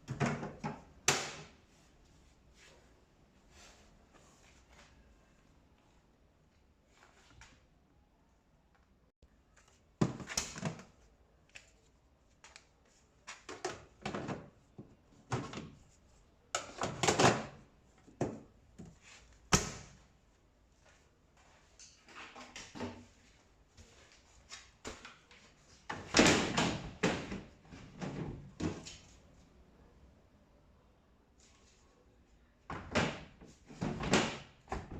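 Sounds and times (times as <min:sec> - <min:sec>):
appliance panels knocking and clattering: 0:00.0 - 0:01.5, 0:25.9 - 0:28.9, 0:32.7 - 0:34.9.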